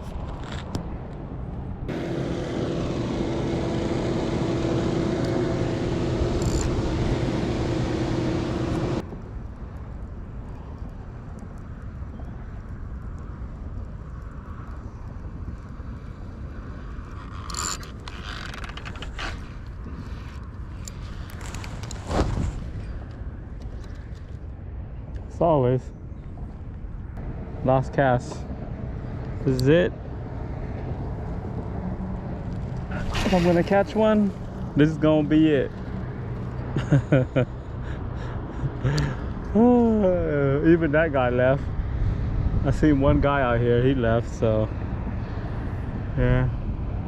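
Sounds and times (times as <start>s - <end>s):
outdoor background: 0.0s - 47.0s
engine running: 1.9s - 9.0s, 27.2s - 36.7s.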